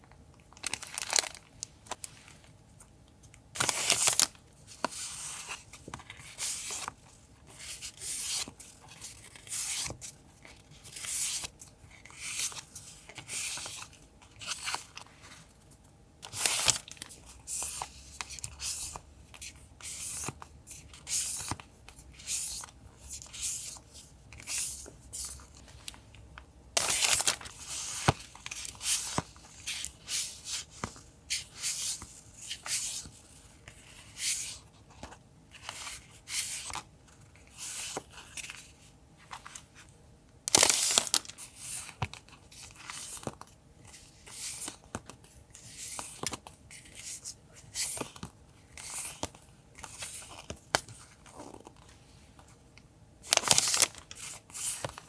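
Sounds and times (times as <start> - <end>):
paper rustling and tearing: 26.8 - 33.0, 53.3 - 55.0.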